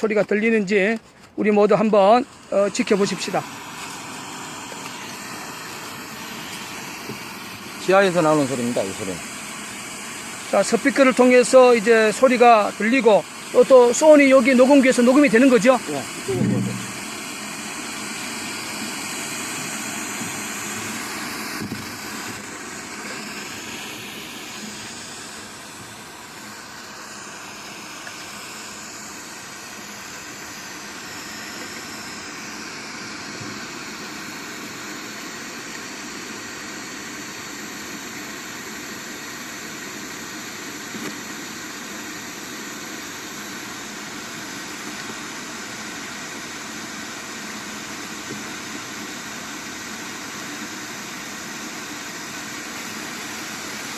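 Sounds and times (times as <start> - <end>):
steady rushing noise: 16.2 - 17.3.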